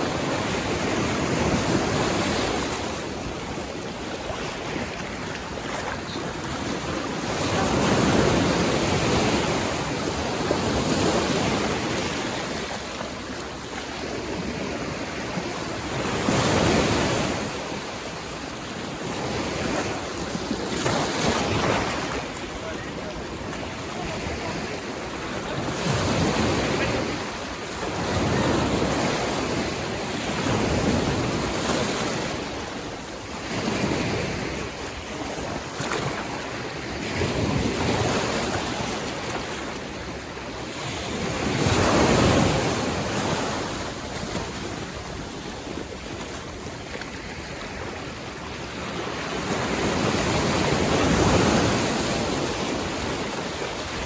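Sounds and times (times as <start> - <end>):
waves breaking on sandy beach: 0.0 - 54.0.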